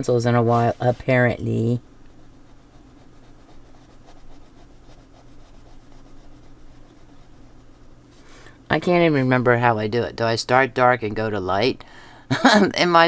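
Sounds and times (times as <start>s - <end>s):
pencil scratching on paper: 2.4s - 7.9s.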